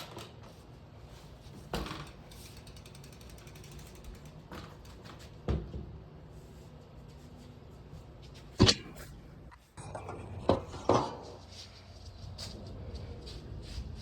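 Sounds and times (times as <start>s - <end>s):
rapid ratchet clicking: 2.0s - 5.0s.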